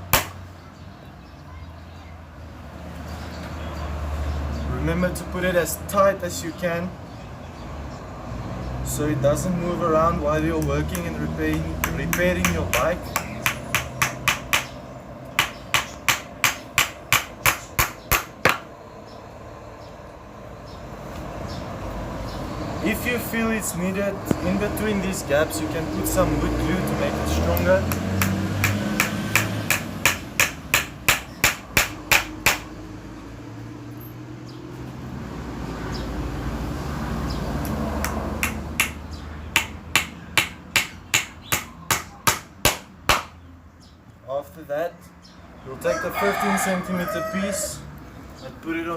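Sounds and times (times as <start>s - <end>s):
hammer driving nails into wood: 11.8s - 14.7s, 15.4s - 18.7s, 27.9s - 32.7s.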